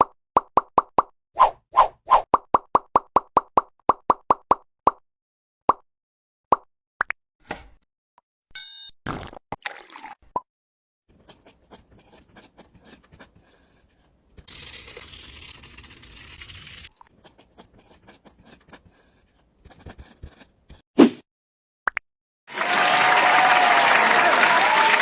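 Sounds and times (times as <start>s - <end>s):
loud applause-like noise: 22.5s - 25.0s.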